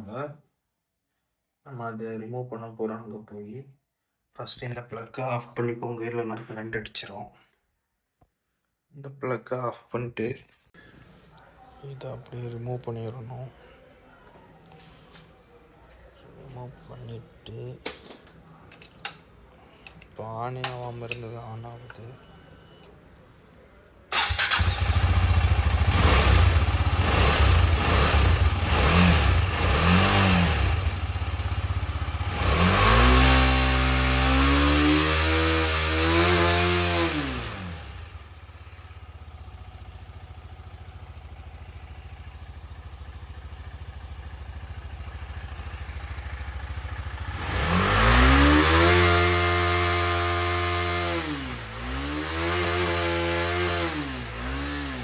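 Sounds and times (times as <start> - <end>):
motorcycle engine starting and revving: 24.1 - 55.0.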